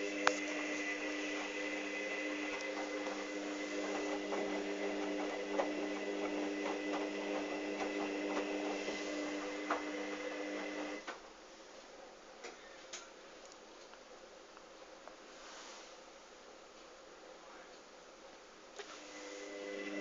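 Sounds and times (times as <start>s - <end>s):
washing machine motor whine: 0.0s - 11.1s, 18.9s - 20.0s.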